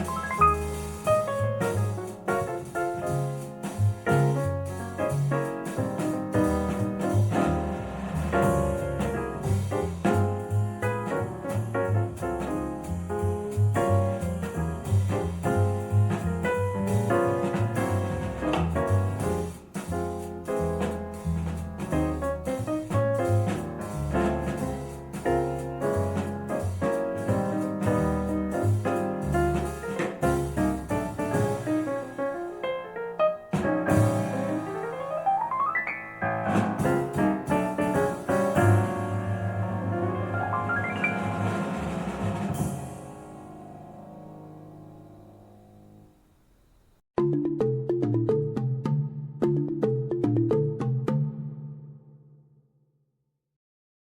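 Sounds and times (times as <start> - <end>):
jazz with piano and bass: 0.0 - 46.4.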